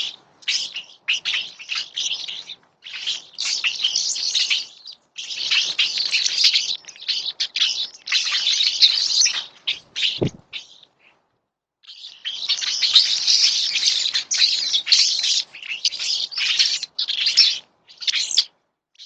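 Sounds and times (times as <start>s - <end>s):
birds chirping: 0.0s - 11.2s.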